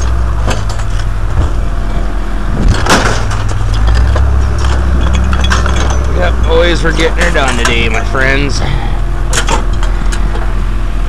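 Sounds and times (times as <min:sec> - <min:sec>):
scrap metal crashing onto pile: 0:00.0 - 0:01.8, 0:02.6 - 0:08.6
steady low rumble: 0:00.0 - 0:11.0.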